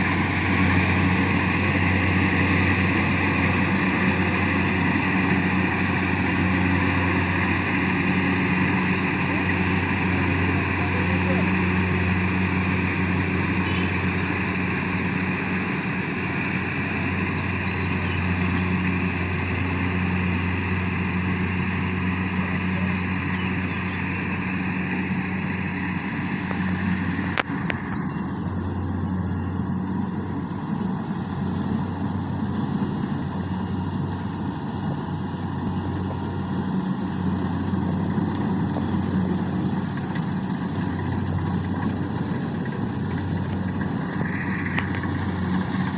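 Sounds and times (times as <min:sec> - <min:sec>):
harvester engine humming: 0:00.0 - 0:45.9.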